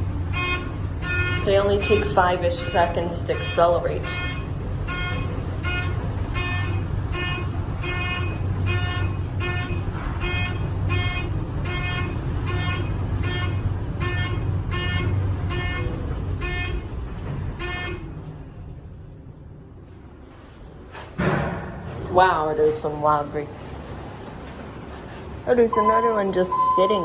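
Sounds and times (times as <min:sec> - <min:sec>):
elevator car rumble: 0:00.0 - 0:27.0
fire alarm horn pulsing: 0:00.2 - 0:16.9, 0:17.6 - 0:18.1, 0:25.6 - 0:27.0.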